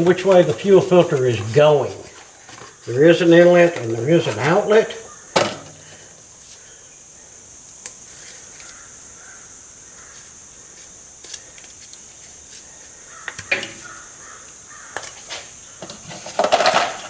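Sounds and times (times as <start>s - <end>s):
high insect drone: 0.0s - 17.0s
crow cawing: 3.4s - 6.1s, 8.5s - 10.3s, 13.0s - 15.3s.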